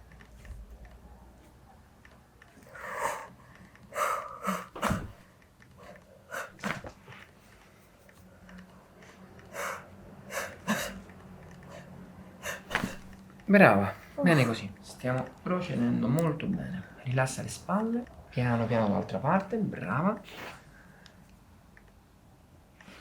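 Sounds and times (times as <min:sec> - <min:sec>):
person sniffing and breathing: 0:02.6 - 0:06.8, 0:09.5 - 0:11.0, 0:11.7 - 0:13.2, 0:20.3 - 0:21.1.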